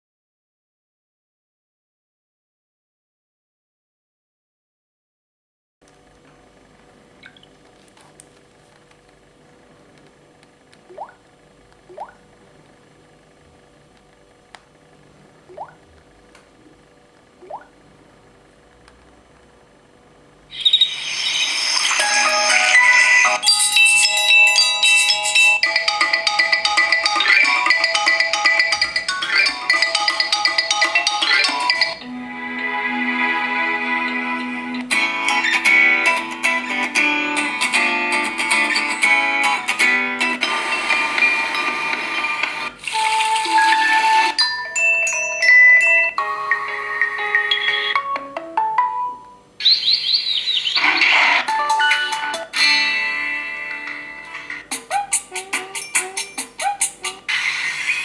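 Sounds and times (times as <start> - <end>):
chiming ringtone: 22.2 - 32.0, 43.4 - 48.1.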